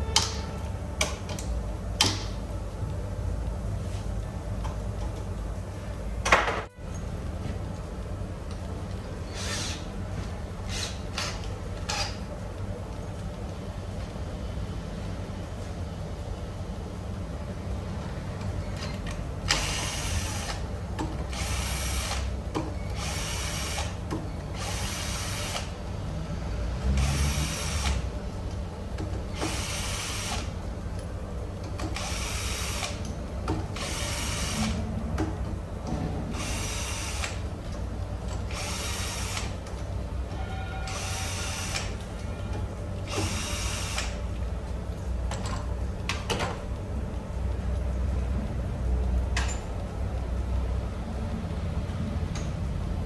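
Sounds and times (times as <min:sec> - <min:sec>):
steady low hum: 0:00.0 - 0:53.0
ratchet wrench clicking: 0:18.8 - 0:22.3, 0:22.9 - 0:25.7, 0:29.3 - 0:30.5, 0:31.8 - 0:33.1, 0:33.8 - 0:34.8, 0:36.4 - 0:37.4, 0:38.4 - 0:39.6, 0:43.1 - 0:44.2.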